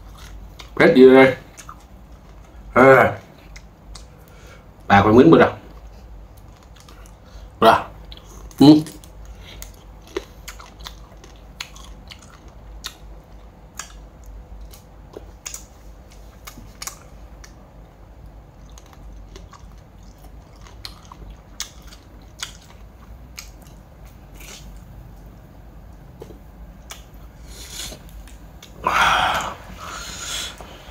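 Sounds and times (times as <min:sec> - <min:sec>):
person chewing crunchy food: 0:00.0 - 0:00.8, 0:01.4 - 0:02.7, 0:05.8 - 0:07.2, 0:08.0 - 0:30.8.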